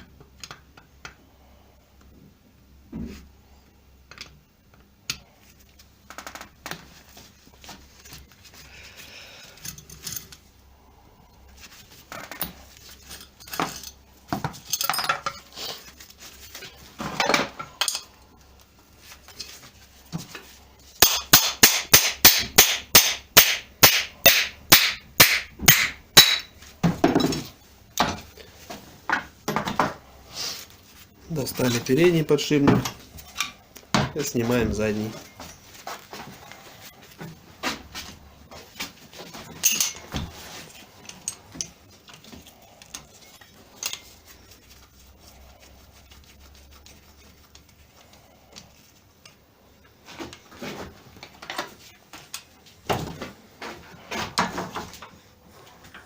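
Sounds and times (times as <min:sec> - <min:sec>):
metal tools clinking and scraping: 0:09.4 - 0:10.5, 0:12.1 - 0:16.0, 0:16.6 - 0:18.2, 0:34.2 - 0:36.2, 0:39.2 - 0:44.3.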